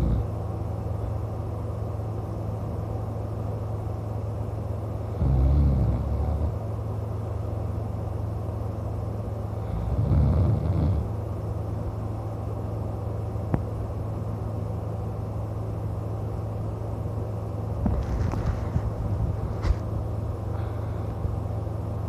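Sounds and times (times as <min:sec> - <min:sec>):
man snoring: 0:00.0 - 0:00.3, 0:05.1 - 0:06.6, 0:09.6 - 0:11.2
low hum: 0:05.8 - 0:22.0.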